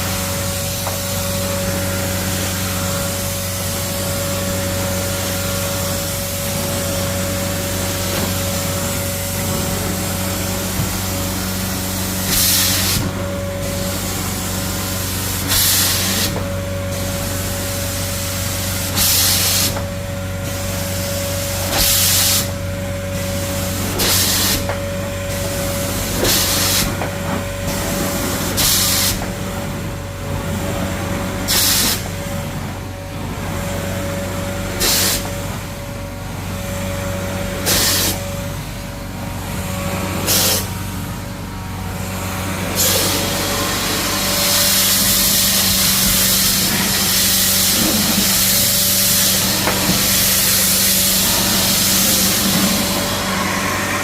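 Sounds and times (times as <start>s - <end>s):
extraction machine hum and whine: 0.0s - 54.0s
hissing spray and suction bursts: 11.9s - 13.2s, 34.8s - 35.2s, 37.7s - 38.2s, 40.3s - 40.7s, 42.7s - 54.0s.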